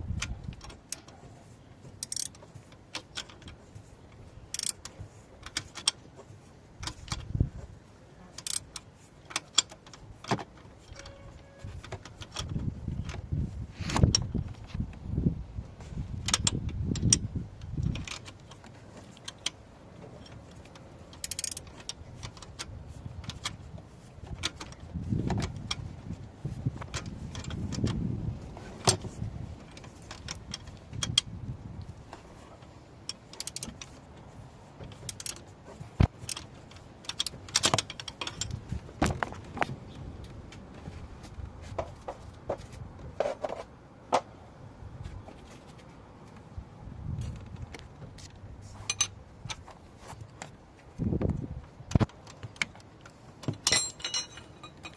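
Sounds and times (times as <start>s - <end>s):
metal tools and bolts clinking: 10.8s - 12.6s, 48.8s - 49.2s, 53.4s - 54.9s.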